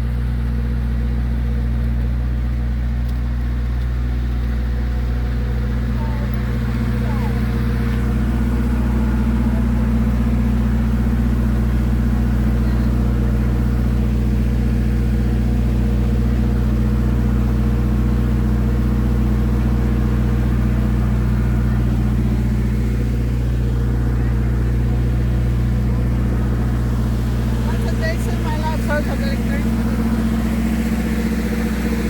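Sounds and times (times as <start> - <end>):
engine running steadily: 0.0 - 32.0.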